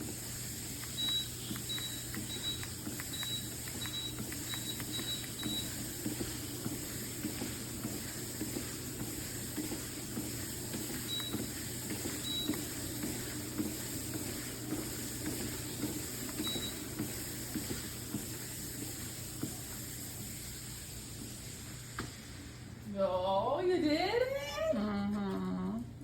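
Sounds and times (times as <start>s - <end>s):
treadmill motor hum and whine: 0.0s - 24.9s.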